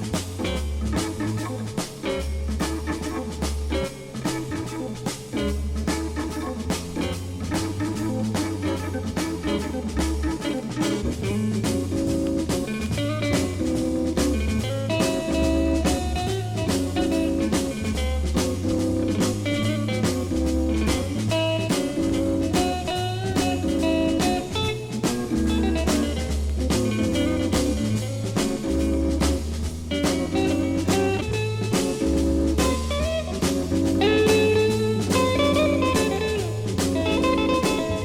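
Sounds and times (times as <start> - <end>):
drums: 0.0 - 38.0
electric guitar: 0.0 - 38.0
organ: 0.0 - 38.0
repeating bass line: 25.2 - 38.0.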